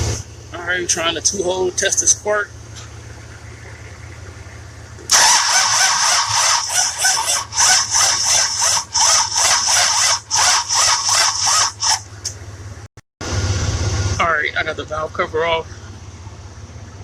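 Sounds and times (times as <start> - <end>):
car starter cranking: 0.0 - 12.4.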